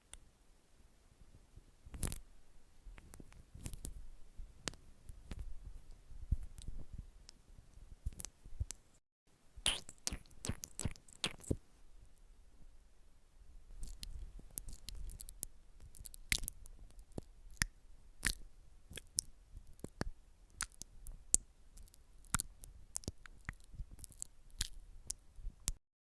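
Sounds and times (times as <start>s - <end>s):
crisp clicks and snips: 1.9s - 2.2s, 3.0s - 4.0s, 13.8s - 25.8s.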